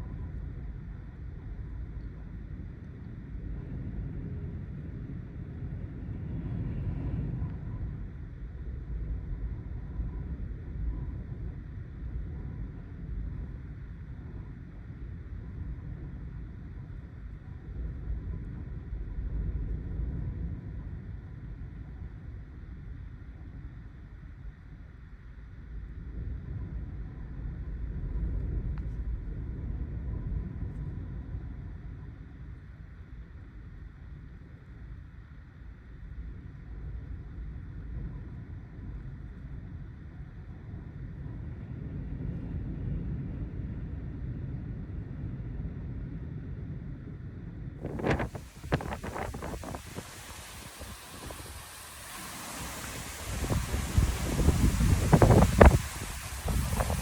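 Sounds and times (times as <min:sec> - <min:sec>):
wind buffeting microphone: 0:47.8 - 0:57.0.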